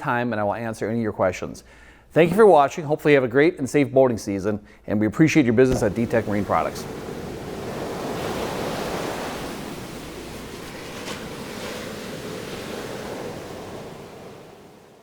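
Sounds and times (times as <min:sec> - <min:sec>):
wind: 0:05.5 - 0:15.0
waves rushing: 0:05.6 - 0:15.0.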